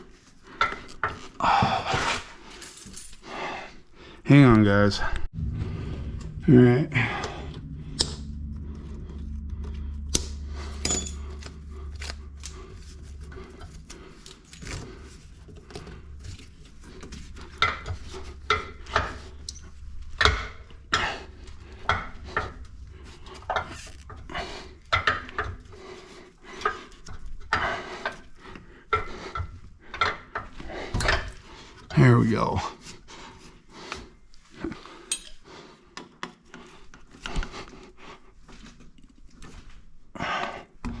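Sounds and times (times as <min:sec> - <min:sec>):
low steady hum: 0:05.3 - 0:26.6.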